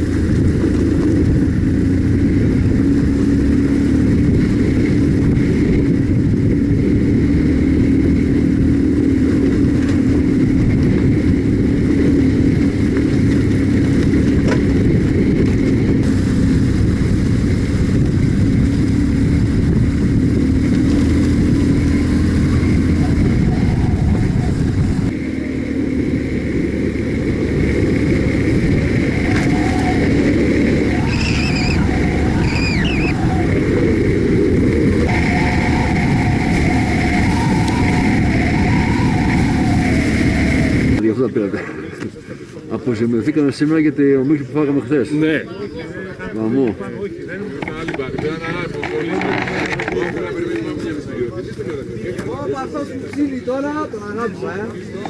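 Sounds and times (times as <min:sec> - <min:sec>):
motorcycle engine running: 0:00.0 - 0:41.0
wind and road noise: 0:00.0 - 0:55.0.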